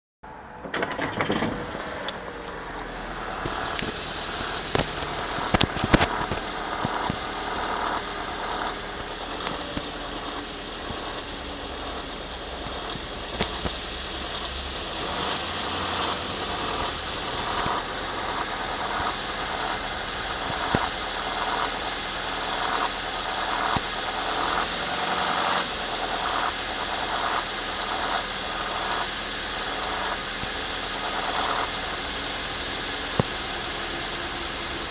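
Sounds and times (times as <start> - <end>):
car engine starting: 0.3 - 34.9
engine idling with metallic rattle: 0.3 - 34.9
sharp clicks: 2.0 - 15.4.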